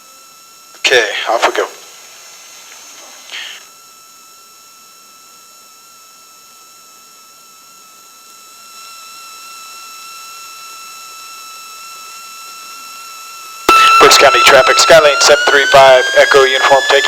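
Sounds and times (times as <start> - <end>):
thin high whine: 0.0 - 17.0
intercom hiss: 0.8 - 3.7, 13.7 - 17.0.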